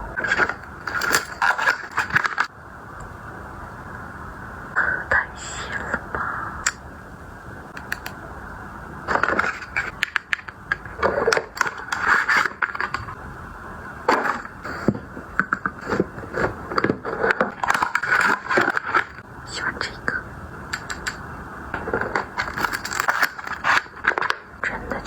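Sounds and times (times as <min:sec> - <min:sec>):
packaging scraping and crackling: 0:00.2 - 0:02.5, 0:09.1 - 0:13.2, 0:14.1 - 0:19.2, 0:21.8 - 0:25.0.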